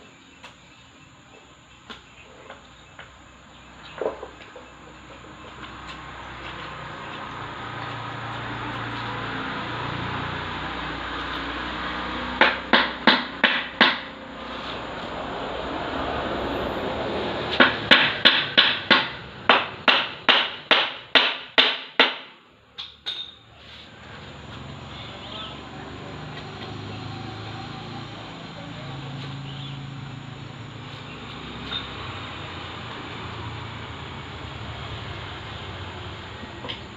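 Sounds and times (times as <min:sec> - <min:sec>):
steady background noise: 0:00.0 - 0:36.9
hammer blows: 0:12.2 - 0:15.2.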